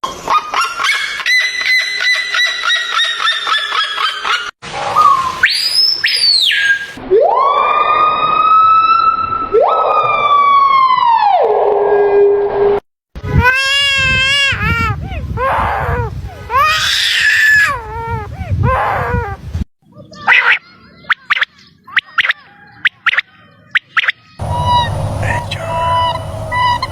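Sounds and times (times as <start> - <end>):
animal call sweeping up and down: 2.7 - 7.0
siren-like animal wails: 7.1 - 12.4, 24.4 - 26.9.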